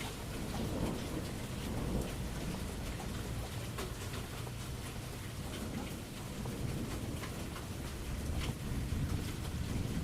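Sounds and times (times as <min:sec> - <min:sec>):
low rumble of thunder: 0:00.0 - 0:10.0
rain drops ticking: 0:00.0 - 0:10.0.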